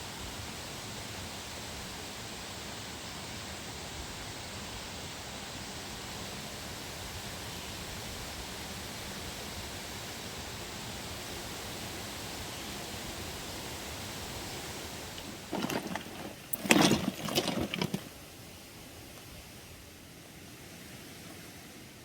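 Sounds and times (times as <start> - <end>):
rushing flowing water: 6.6 - 22.0.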